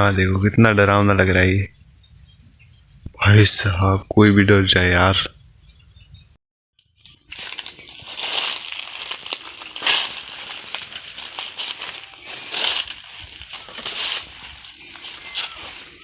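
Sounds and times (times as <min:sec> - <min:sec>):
dry leaves crunching: 0:06.8 - 0:16.0.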